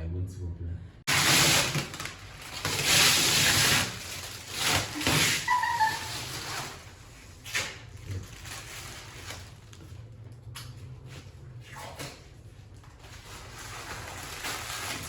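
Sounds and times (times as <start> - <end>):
sliding and rustling noises: 1.1 - 10.1, 10.7 - 15.0
short squeak: 5.3 - 6.4.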